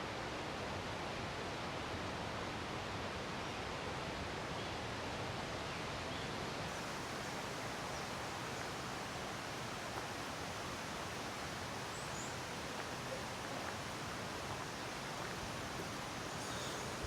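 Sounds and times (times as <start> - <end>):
mountain stream flowing: 0.0 - 17.0
faint high chirp: 16.3 - 17.0.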